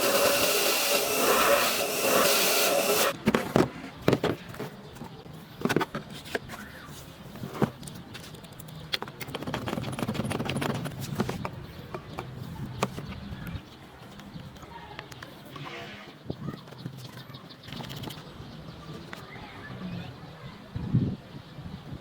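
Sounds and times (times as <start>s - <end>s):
power tool running: 0.0s - 3.2s.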